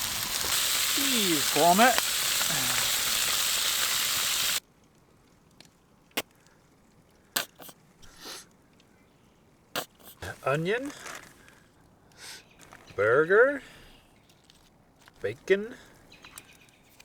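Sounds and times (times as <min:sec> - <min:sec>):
food sizzling: 0:00.0 - 0:04.6.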